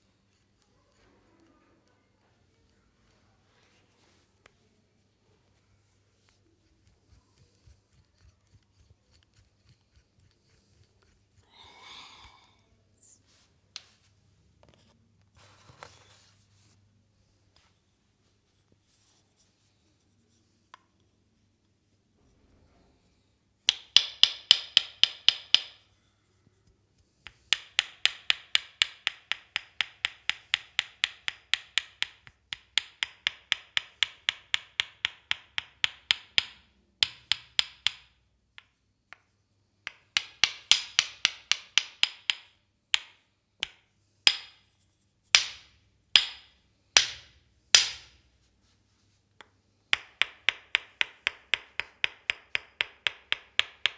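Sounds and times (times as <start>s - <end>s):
massage gun tapping: 23.7s - 25.8s, 27.3s - 39.3s, 39.9s - 44.6s, 45.4s - 48.2s, 49.9s - 53.9s.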